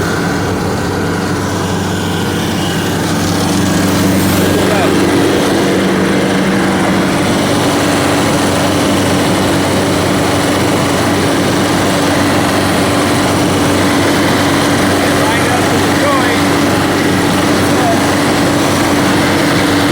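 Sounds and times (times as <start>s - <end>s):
blade grinding through concrete: 0.0s - 19.9s
concrete saw engine: 0.0s - 19.9s.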